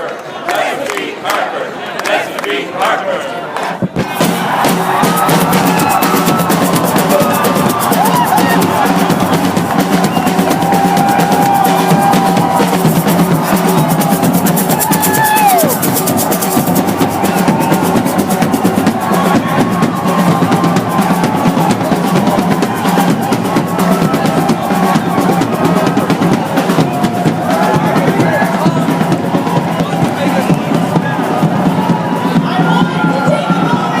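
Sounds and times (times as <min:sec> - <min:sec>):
snare drum rolls: 0:03.8 - 0:33.9
drum-driven music: 0:03.8 - 0:34.0.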